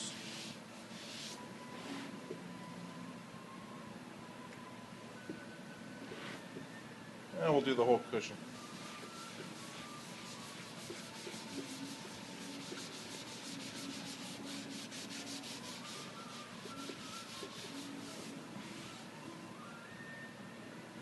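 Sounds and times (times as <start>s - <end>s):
sponge rubbing on leather: 0.0s - 2.1s, 8.7s - 19.1s.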